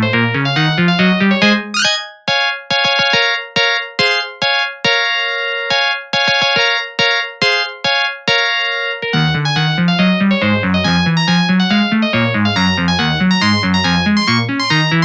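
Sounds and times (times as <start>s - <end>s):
ringtone with bass line: 0.9s - 2.2s, 4.0s - 4.3s, 9.2s - 15.0s
polyphonic ringtone melody: 1.4s - 2.3s, 4.0s - 4.4s, 11.1s - 15.0s.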